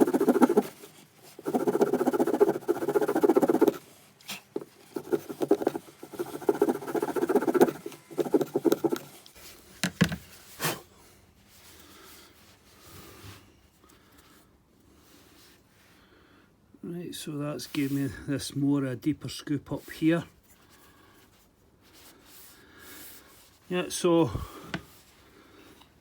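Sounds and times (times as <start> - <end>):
saw rasping through wood: 0.0 - 0.7, 1.4 - 3.8, 4.6 - 9.1.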